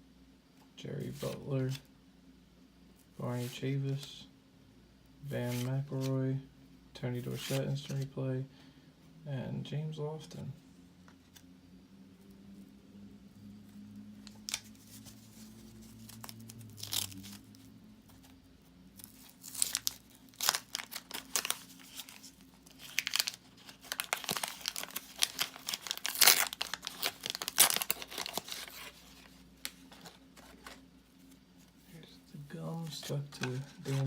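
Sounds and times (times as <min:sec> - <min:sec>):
wax paper wrapper tearing and crinkling: 0:14.3 - 0:17.7, 0:19.0 - 0:30.8.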